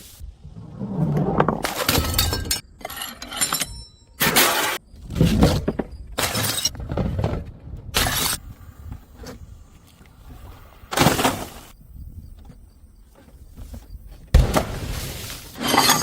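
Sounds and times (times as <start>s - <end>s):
falling glass pieces clinking: 15.6s - 16.0s
glass bottles smashing: 15.6s - 16.0s.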